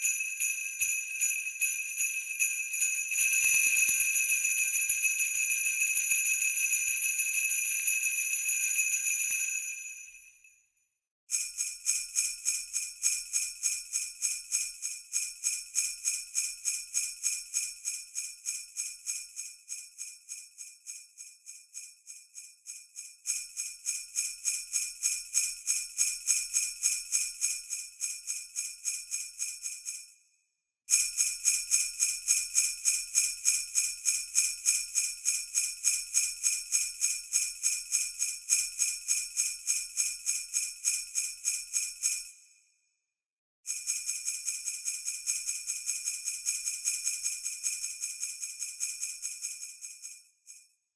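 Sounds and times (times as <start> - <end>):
sleigh bells jingling: 0.0 - 4.4.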